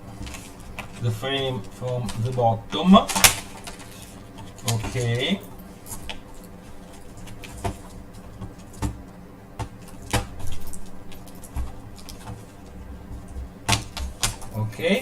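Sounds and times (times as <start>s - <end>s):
plastic clips snapping: 1.6s - 5.2s.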